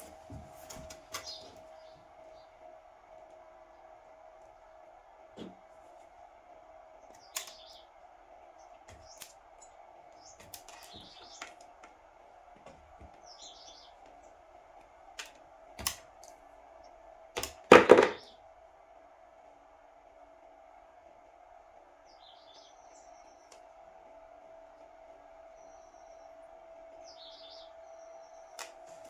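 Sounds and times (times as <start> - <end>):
birds chirping: 0.0 - 2.7, 6.9 - 12.2, 12.9 - 14.4, 17.7 - 18.4, 22.0 - 23.8, 25.4 - 29.0
faint steady hum: 0.0 - 29.0.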